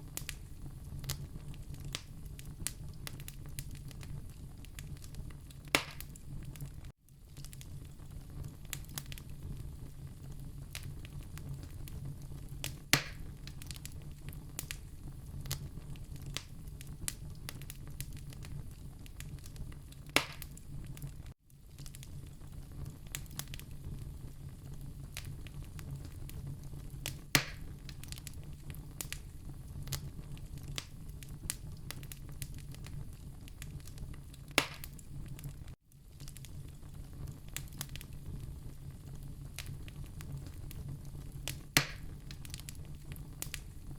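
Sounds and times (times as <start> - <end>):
loud fire pops: 0.0 - 43.9
wood fire crackling: 0.0 - 43.9.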